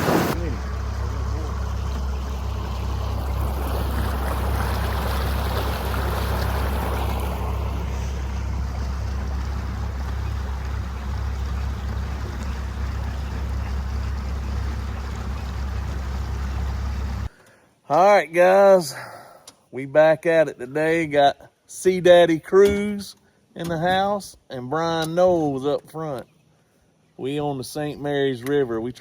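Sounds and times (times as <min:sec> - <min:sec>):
water rushing: 0:00.0 - 0:17.3
small boat engine rumble: 0:00.0 - 0:17.4.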